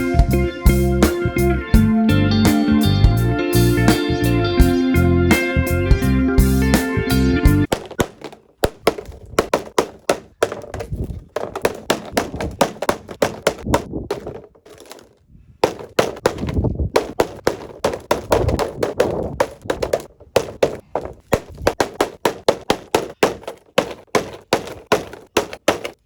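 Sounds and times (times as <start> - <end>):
guitar music: 0.0 - 7.7
taps clicks and knocks: 7.7 - 26.0.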